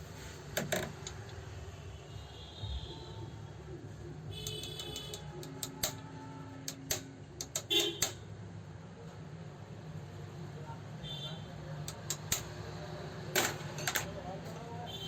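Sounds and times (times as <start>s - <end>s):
metal clicks and taps: 4.4s - 8.2s, 11.8s - 12.6s.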